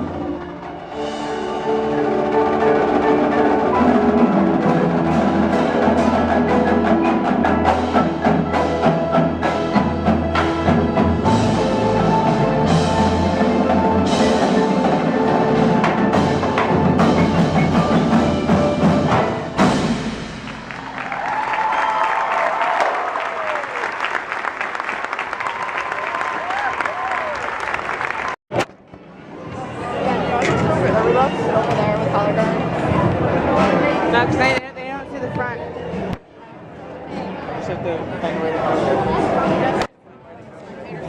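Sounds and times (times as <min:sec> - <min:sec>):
percussion ensemble playing: 0:00.0 - 0:22.4, 0:30.0 - 0:36.2
applause and cheering: 0:20.4 - 0:28.4.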